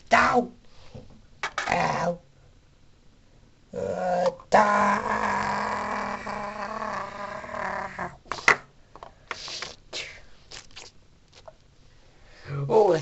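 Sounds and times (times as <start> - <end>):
held pitched voice-like sound: 3.8 - 8.2.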